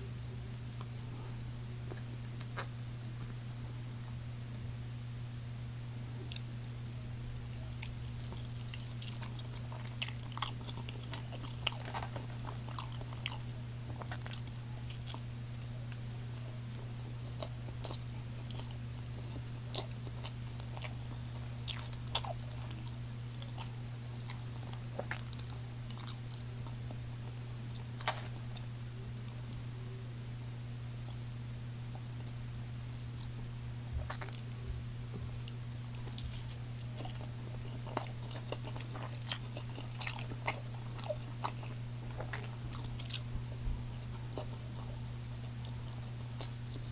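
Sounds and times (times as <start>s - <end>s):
chewing and biting: 6.2s - 29.6s, 34.0s - 46.9s.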